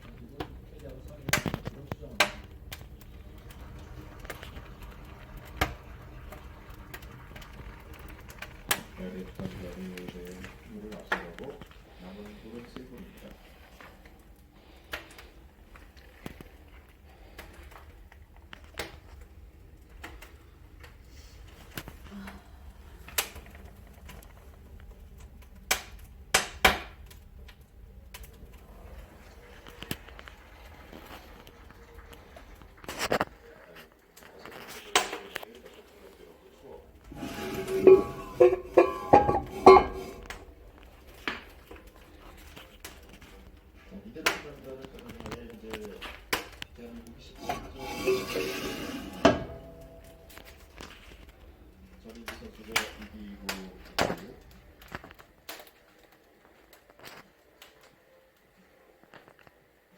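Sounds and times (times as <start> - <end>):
wood fire crackling: 0.0 - 59.9
sharp fire pops: 0.1 - 9.1.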